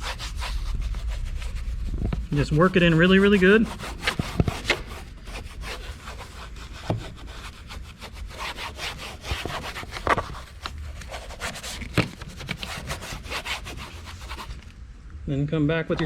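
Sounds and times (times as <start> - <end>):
brush scrubbing plastic: 0.0 - 14.7
brush knocking against plastic: 6.8 - 7.4, 11.6 - 12.6.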